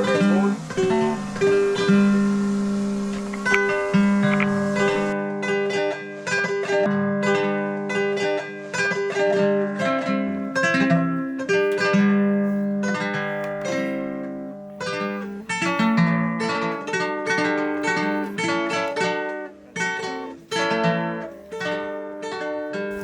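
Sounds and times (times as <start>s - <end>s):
acoustic guitars strumming chords: 0.0s - 23.0s
picked guitar melody: 0.0s - 23.0s.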